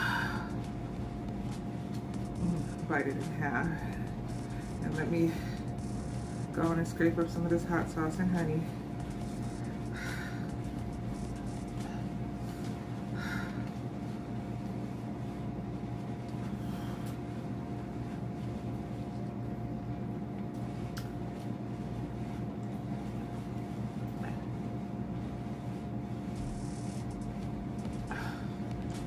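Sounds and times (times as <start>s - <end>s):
steady tone: 0.0s - 12.4s
machine hum: 0.0s - 29.0s.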